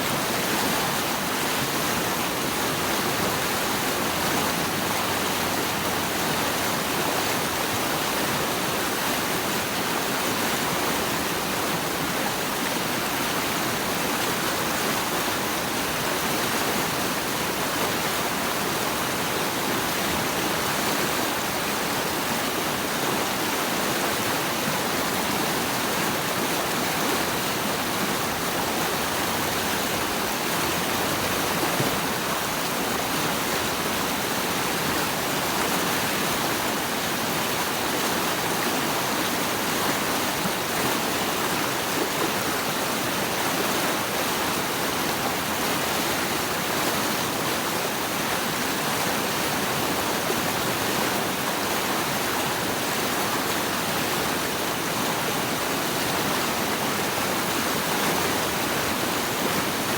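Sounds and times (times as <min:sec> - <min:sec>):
running water rushing: 0:00.0 - 0:59.9.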